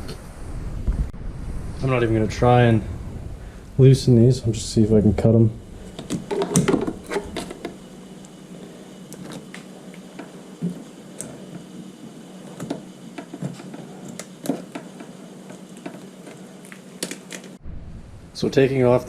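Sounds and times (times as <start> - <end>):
steady low hum: 0.0 - 19.0
hand tools clicking on metal: 12.5 - 17.6.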